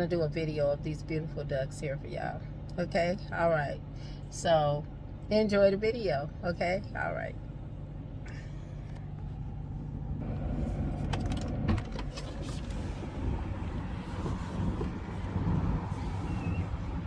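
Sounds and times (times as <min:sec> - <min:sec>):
car engine idling: 0:00.3 - 0:17.0.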